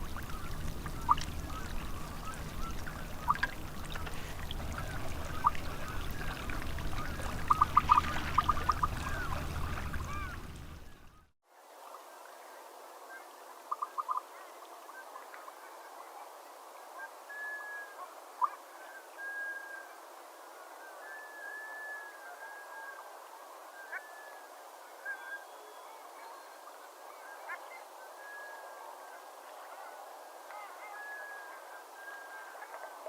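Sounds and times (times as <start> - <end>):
steady hiss: 0.0 - 11.0
ducks whistling calls: 0.0 - 11.2.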